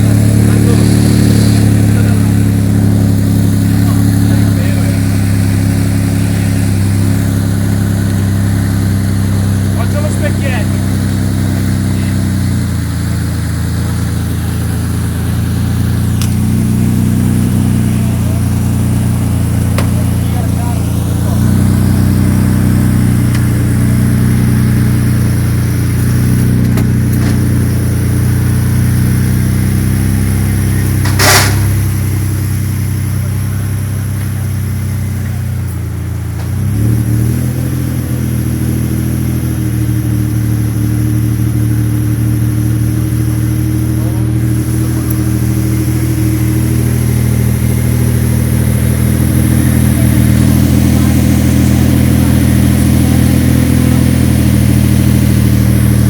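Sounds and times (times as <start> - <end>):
car engine idling: 0.0 - 56.0
short sharp noise: 30.9 - 32.0.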